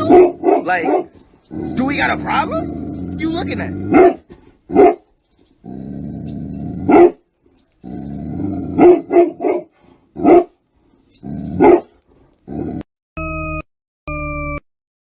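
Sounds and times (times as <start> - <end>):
dog growling: 0.0 - 4.6, 5.6 - 7.2, 7.8 - 10.4, 11.2 - 12.9
dog barking deeply: 0.0 - 5.0, 6.8 - 7.2, 8.4 - 10.6, 11.4 - 12.8.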